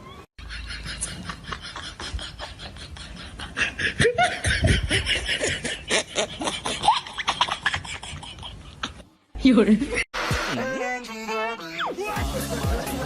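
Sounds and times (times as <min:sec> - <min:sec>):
people laughing: 0:00.4 - 0:09.0, 0:12.1 - 0:13.0.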